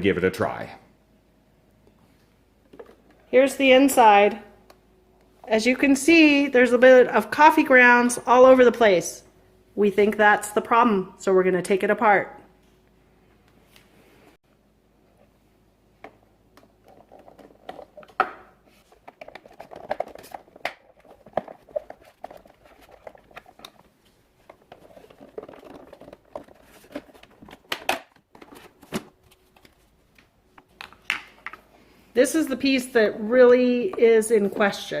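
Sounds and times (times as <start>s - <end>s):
plastic parts clicking and scraping: 18.8s - 29.0s.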